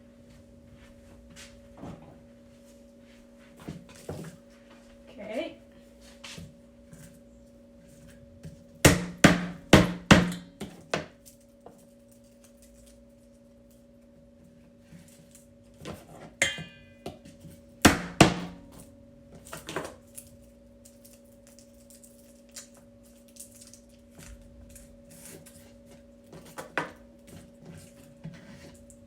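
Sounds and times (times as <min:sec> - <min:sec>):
appliance hum: 0:00.0 - 0:29.0
metallic ring: 0:16.4 - 0:17.1.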